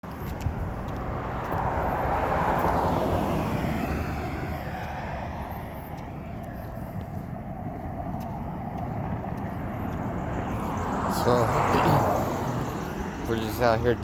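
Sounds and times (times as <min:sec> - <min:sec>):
vehicle passing by: 0:00.0 - 0:14.0
steady low rumble: 0:00.1 - 0:14.0.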